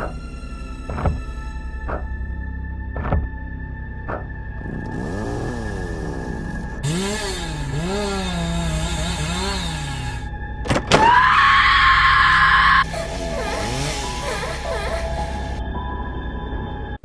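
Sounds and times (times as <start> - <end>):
eerie music: 0.0 - 17.0
chainsaw revving: 4.6 - 10.3, 12.8 - 15.6.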